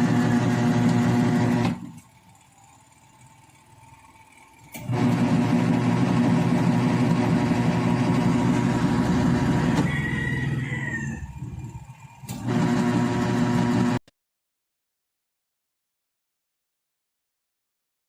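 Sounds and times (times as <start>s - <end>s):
washing machine motor humming: 0.0s - 14.0s.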